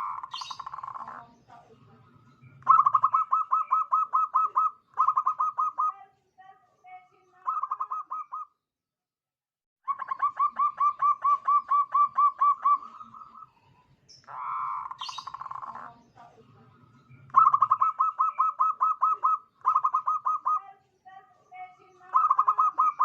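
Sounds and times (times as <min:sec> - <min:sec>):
dove cooing: 0:00.0 - 0:01.6, 0:02.5 - 0:06.0, 0:07.4 - 0:08.5, 0:09.9 - 0:13.6, 0:14.3 - 0:16.4, 0:17.1 - 0:20.7, 0:22.0 - 0:23.0.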